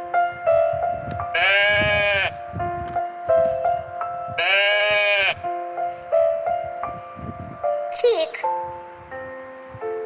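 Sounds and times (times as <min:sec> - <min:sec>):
background music sustained notes: 0:00.0 - 0:10.0
goat bleating: 0:01.4 - 0:02.4, 0:04.4 - 0:05.4.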